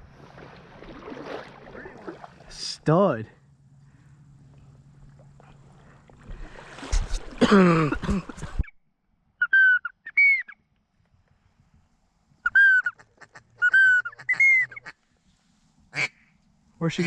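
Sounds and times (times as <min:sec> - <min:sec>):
brief whistled calls: 0:09.4 - 0:10.6.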